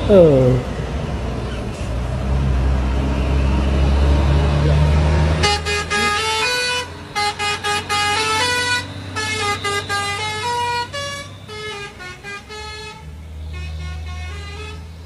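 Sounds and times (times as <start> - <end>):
musical truck horn tune: 5.2 - 15.0.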